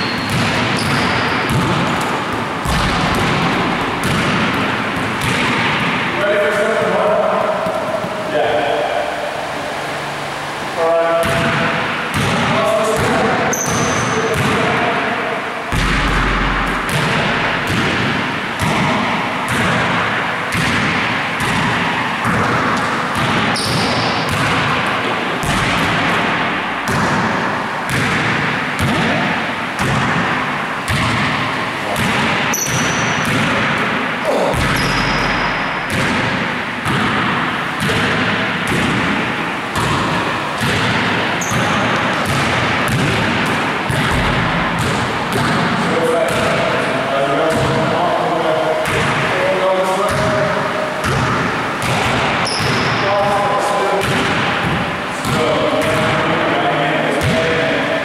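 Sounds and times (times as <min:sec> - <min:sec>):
short high squeaks: 0:00.0 - 0:01.4, 0:13.5 - 0:14.2
basketball bouncing thuds: 0:00.0 - 0:08.3, 0:11.2 - 0:14.7, 0:15.7 - 0:46.7, 0:47.5 - 0:47.8, 0:51.0 - 0:52.9, 0:54.0 - 0:56.2, 0:57.2 - 0:57.5.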